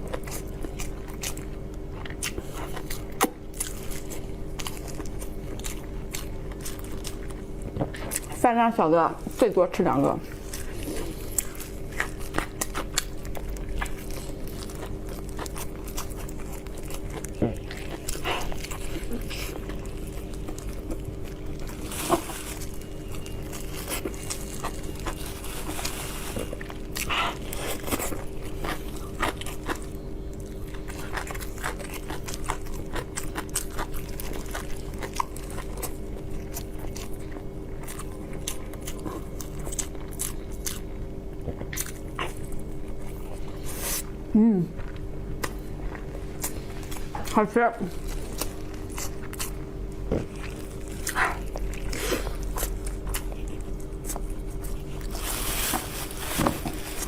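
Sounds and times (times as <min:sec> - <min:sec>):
person chewing food: 0:00.0 - 0:08.4, 0:10.2 - 0:57.0
steady low hum: 0:00.0 - 0:57.0.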